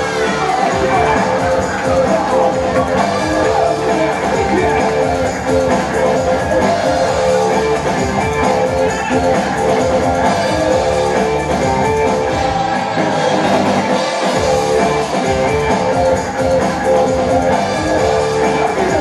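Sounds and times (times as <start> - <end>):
loud music: 0.0 - 19.0.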